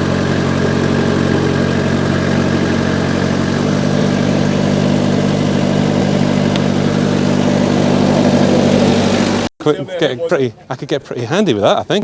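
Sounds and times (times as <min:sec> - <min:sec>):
diesel engine running: 0:00.0 - 0:09.5.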